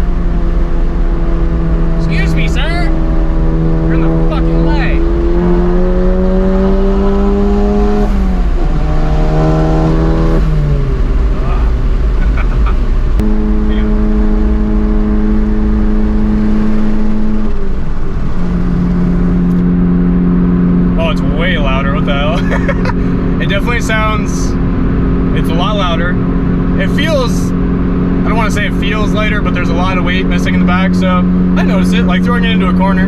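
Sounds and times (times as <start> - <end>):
car engine pulling under load: 5.0 - 25.4.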